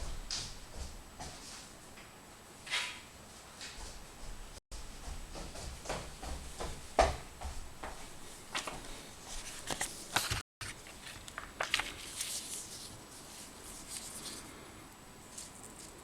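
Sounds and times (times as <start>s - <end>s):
objects being handled: 8.5s - 14.5s.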